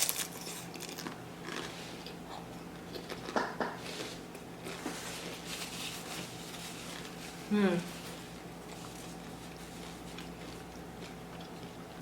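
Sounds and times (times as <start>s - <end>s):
chewing crunchy chips: 0.0s - 5.0s, 8.2s - 12.0s.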